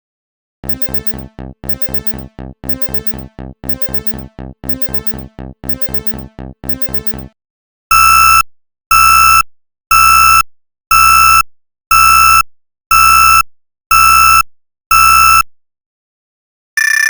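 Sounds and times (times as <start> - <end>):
electronic alarm beeping: 0.6 - 7.3
higher-pitched alarm beep: 0.6 - 7.3.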